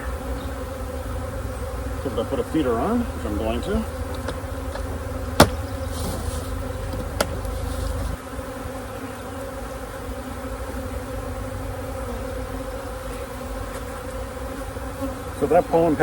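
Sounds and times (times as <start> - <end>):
bees buzzing: 0.0 - 16.0
sharp knock: 5.4 - 5.6.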